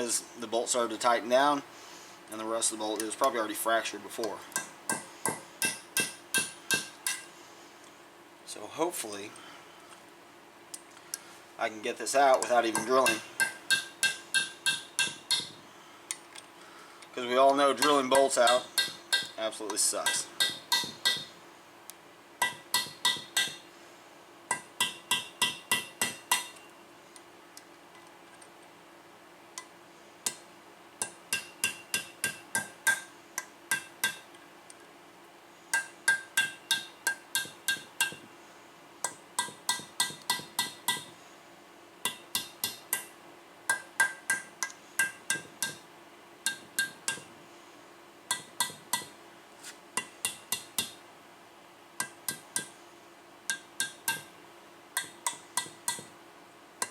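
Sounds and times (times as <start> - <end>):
ringing metal-on-metal tapping: 4.2 - 7.3, 12.3 - 15.6, 17.7 - 21.4, 22.4 - 23.7, 24.5 - 26.7, 31.0 - 34.3, 35.7 - 38.3, 39.0 - 41.1, 42.0 - 43.1, 43.7 - 45.8, 46.4 - 47.3, 48.3 - 49.2, 50.0 - 51.0, 52.0 - 52.7, 53.5 - 54.3, 55.0 - 56.2.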